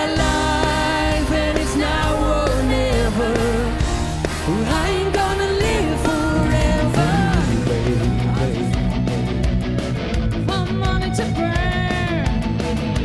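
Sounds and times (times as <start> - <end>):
guitar bass and drums: 0.0 - 13.0
person singing long notes: 4.4 - 8.9.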